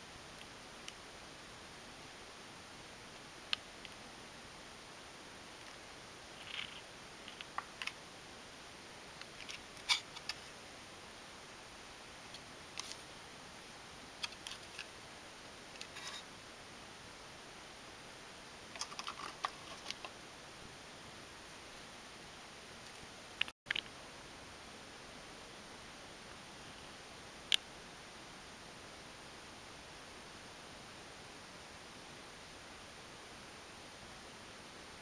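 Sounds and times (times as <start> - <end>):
faint steady hiss: 0.0 - 35.0.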